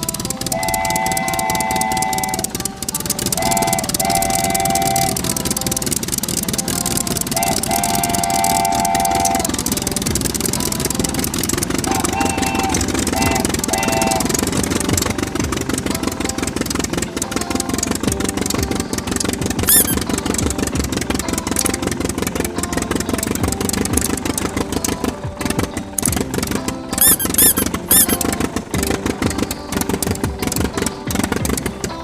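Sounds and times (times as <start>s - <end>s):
small motor rattling: 0.0s - 32.0s
short tonal beeps: 19.6s - 20.1s, 27.0s - 28.2s
squeaky chirp: 19.6s - 20.2s, 26.9s - 28.4s.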